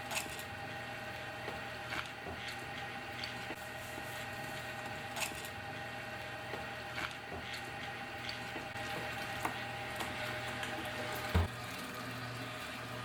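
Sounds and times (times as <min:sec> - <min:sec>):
steady electrical hum: 0:00.0 - 0:13.0
food squishing: 0:06.5 - 0:10.8.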